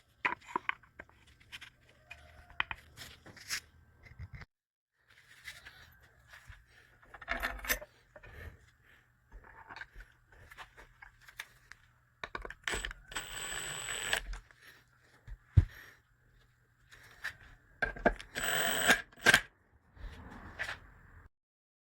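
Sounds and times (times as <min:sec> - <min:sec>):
power tool whirring: 0:12.7 - 0:14.3, 0:18.3 - 0:19.4.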